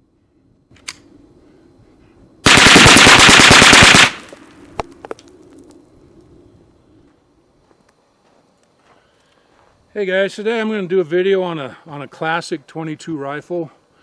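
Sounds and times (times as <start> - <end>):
rifle rapid gunshots: 2.4 - 4.3.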